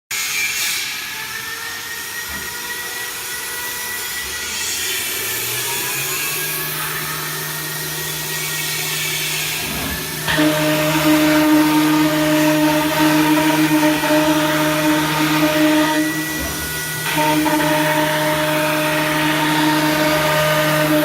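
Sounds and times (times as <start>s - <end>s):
router machine running with whine: 0.2s - 21.0s
strong steady hum: 5.0s - 21.0s.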